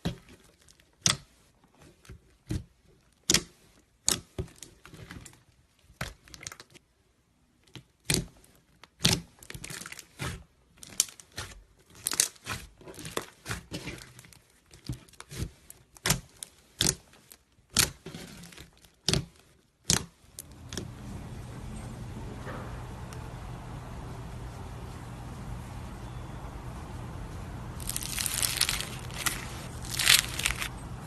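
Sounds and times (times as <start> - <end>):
slime popping and crackling: 27.8 - 30.7.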